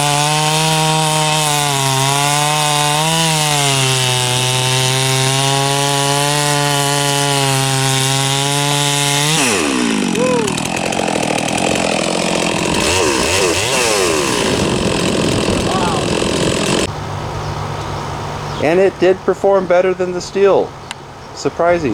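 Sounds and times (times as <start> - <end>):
chainsaw cutting log: 0.0 - 16.9.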